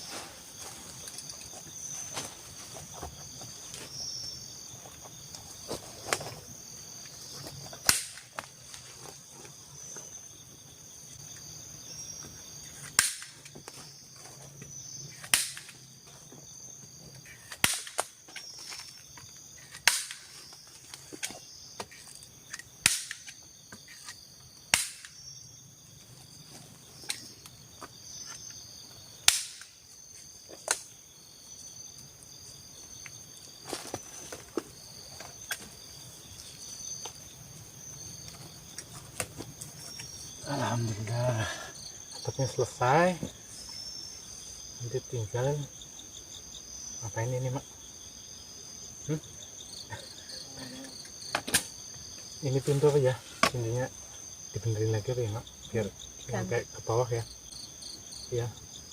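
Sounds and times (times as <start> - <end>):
forest insects chirring: 0.0 - 58.9.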